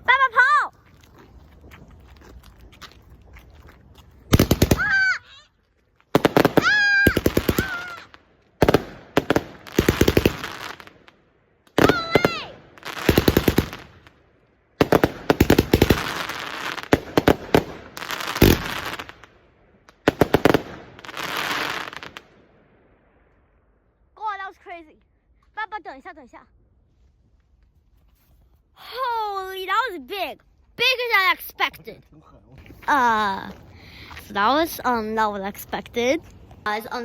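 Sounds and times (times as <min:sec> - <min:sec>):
firework crackling bangs: 0:04.3 - 0:05.0, 0:06.1 - 0:11.1, 0:11.7 - 0:14.2, 0:14.8 - 0:19.3, 0:20.0 - 0:22.3.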